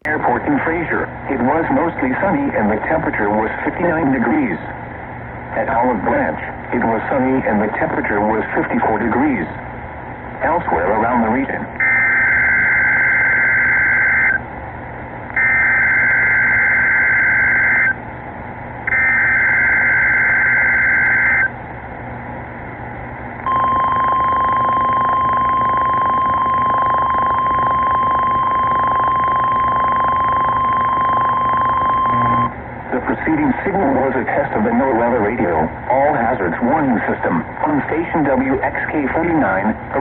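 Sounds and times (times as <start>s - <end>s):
radio static: 10.4s - 14.4s, 23.5s - 40.0s
steady warning alarm tone: 11.8s - 14.4s, 15.3s - 18.0s, 18.9s - 21.5s, 23.4s - 32.6s
digital header tone bursts: 18.9s - 21.5s.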